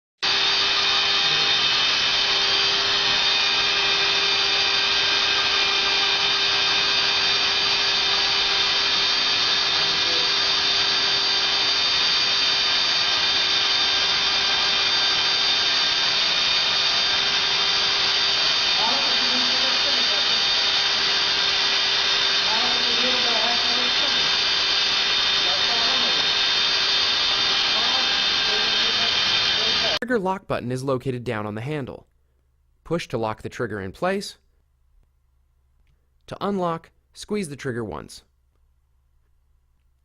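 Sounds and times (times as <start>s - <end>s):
plastic welding machine whining: 0.2s - 30.0s.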